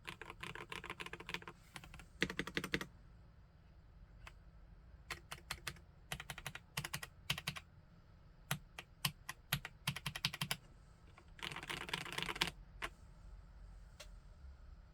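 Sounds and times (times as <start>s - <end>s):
typing on mechanical keyboard: 0.0s - 2.9s, 5.1s - 7.6s, 8.5s - 10.6s, 11.4s - 12.6s.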